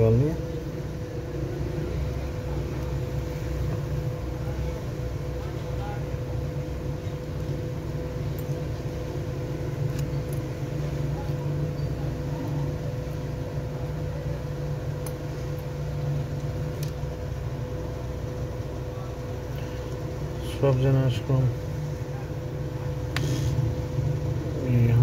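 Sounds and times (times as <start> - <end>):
low machine hum: 0.0 - 25.0.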